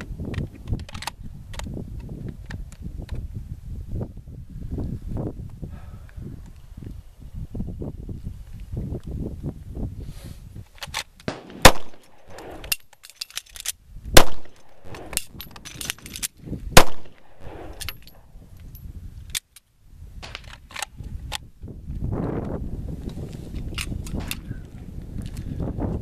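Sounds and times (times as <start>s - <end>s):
metallic clicks of reloading: 10.8s - 13.8s, 14.5s - 16.4s, 17.1s - 18.2s
pistol shots: 11.3s - 12.8s, 14.2s - 15.4s, 16.8s - 18.0s.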